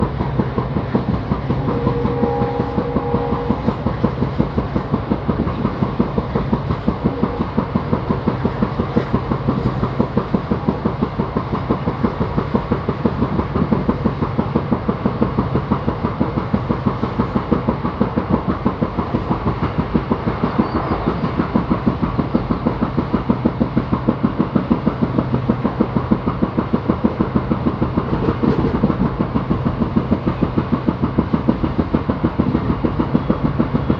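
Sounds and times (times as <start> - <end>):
low running hum: 0.0 - 17.4
train wheels clickety-clack: 0.0 - 33.9.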